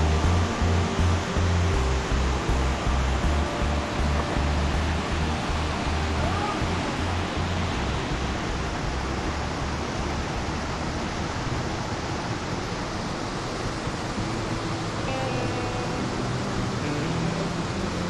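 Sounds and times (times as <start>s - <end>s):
rushing water: 0.0s - 18.0s.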